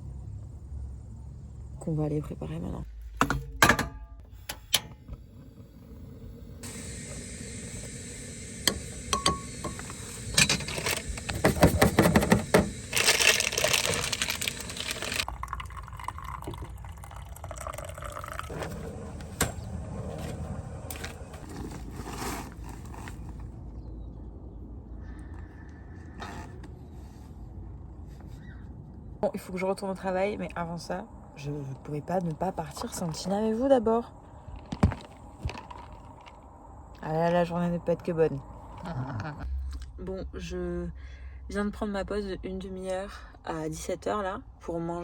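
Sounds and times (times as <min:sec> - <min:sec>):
clinks and knocks: 0:03.2 - 0:04.2
handling noises: 0:06.6 - 0:15.2
water running into container: 0:06.6 - 0:18.9.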